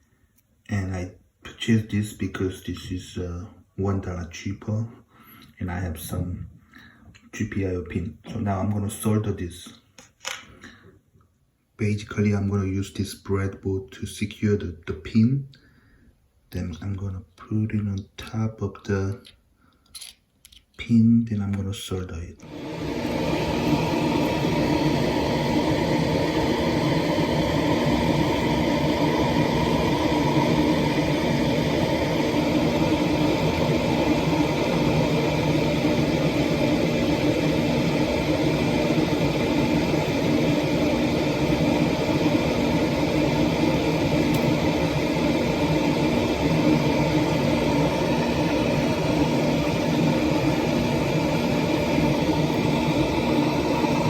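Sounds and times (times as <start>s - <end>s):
fan motor humming and whirring: 22.4s - 54.0s.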